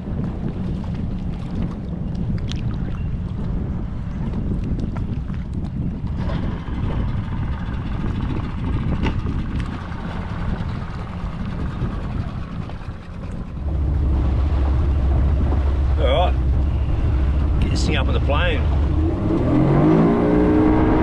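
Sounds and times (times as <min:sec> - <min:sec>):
outboard motor running: 0:00.0 - 0:21.0
rushing water: 0:00.0 - 0:21.0
wind noise: 0:00.0 - 0:21.0.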